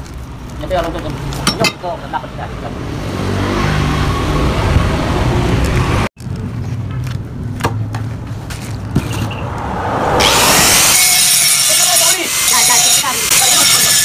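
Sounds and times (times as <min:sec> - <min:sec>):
low engine hum: 0:03.9 - 0:11.0.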